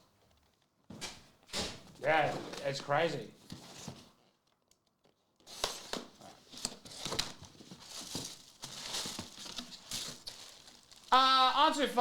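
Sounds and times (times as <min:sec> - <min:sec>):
plastic packaging crinkling: 0:05.6 - 0:12.0.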